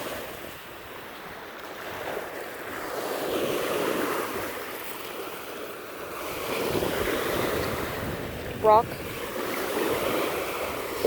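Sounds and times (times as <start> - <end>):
waves washing onto rocky beach: 0.0 - 11.0
wind on microphone: 6.1 - 11.0.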